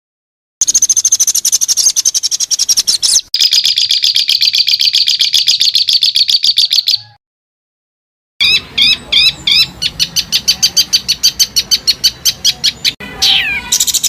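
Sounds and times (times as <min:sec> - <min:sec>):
songbird rapid repeated notes: 0:00.6 - 0:07.0, 0:08.4 - 0:13.0.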